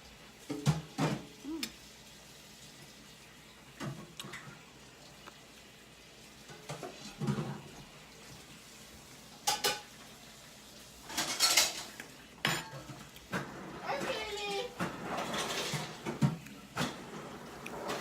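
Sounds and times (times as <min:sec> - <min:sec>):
cutlery scraping on a plate: 0:09.4 - 0:09.9, 0:11.1 - 0:13.5, 0:14.8 - 0:18.0.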